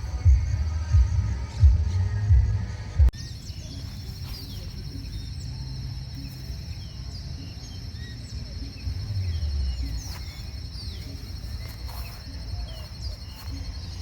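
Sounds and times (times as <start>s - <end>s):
bird chirps: 0.0s - 14.0s
high insect trill: 3.2s - 14.0s.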